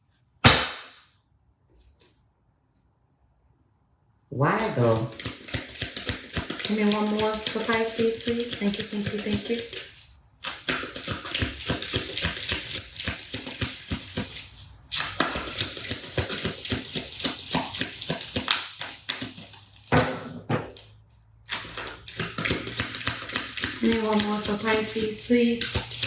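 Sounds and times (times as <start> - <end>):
cards being shuffled: 4.6 - 19.9.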